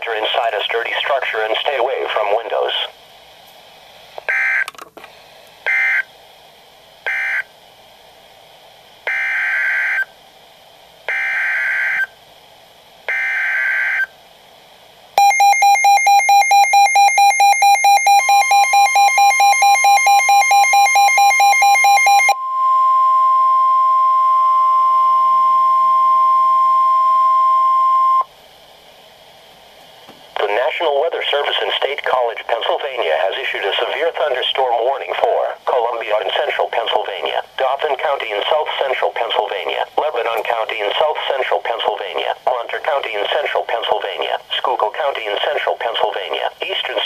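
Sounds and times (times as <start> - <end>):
steady warning alarm tone: 4.2 - 4.7, 5.7 - 6.1, 7.1 - 7.5, 9.1 - 10.1, 11.1 - 12.2, 13.1 - 14.1, 15.2 - 28.3.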